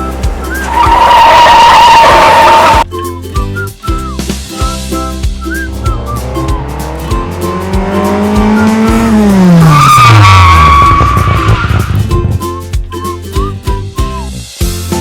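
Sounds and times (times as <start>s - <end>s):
children's background music: 0.0s - 9.7s, 10.5s - 15.0s
car engine revving: 0.2s - 2.8s, 5.5s - 12.1s
tyre screech: 0.4s - 2.9s, 5.4s - 12.4s.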